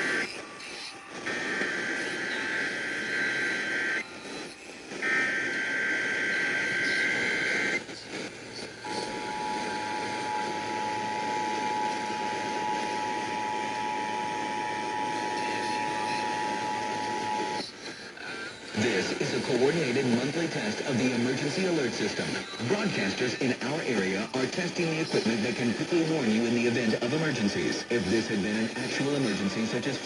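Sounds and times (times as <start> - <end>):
two-tone attention signal: 5.0 - 7.8, 8.8 - 17.6.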